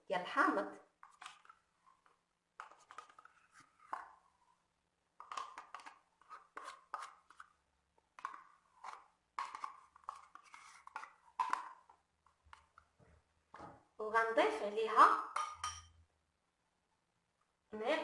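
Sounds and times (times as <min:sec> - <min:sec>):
spoon scraping and knocking: 0:01.0 - 0:04.3, 0:05.2 - 0:12.8, 0:15.2 - 0:16.0.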